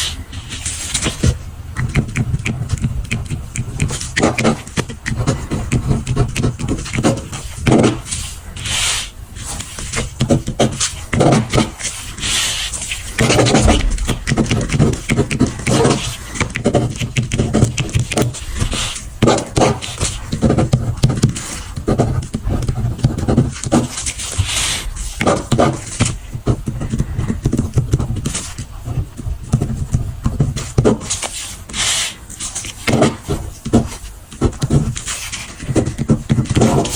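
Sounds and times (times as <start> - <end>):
pen scratching on paper: 0.0 - 36.9
paper rustling: 3.8 - 26.2.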